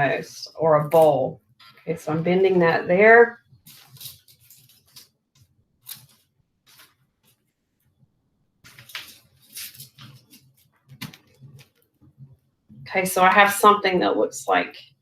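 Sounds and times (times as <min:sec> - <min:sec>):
twigs crackling and rustling: 0:03.5 - 0:07.4, 0:08.6 - 0:11.8.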